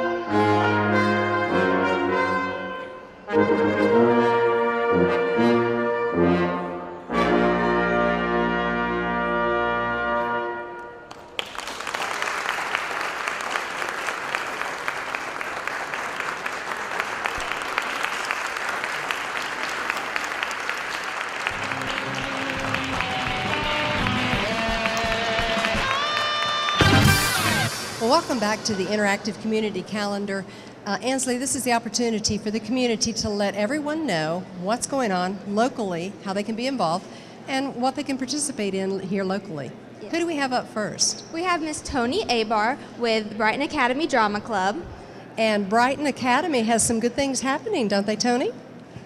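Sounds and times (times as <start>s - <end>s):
brass ensemble playing: 0.0s - 11.1s, 21.4s - 29.7s
audience applause: 11.1s - 27.9s.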